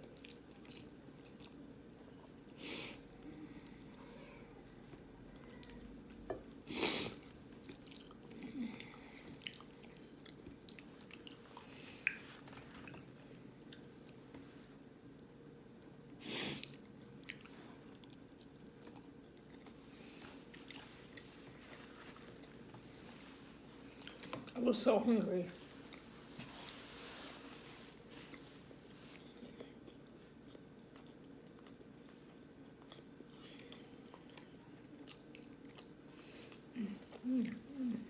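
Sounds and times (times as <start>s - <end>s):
person chewing food: 0.0s - 4.0s, 4.7s - 14.4s, 16.6s - 24.6s, 28.0s - 38.0s.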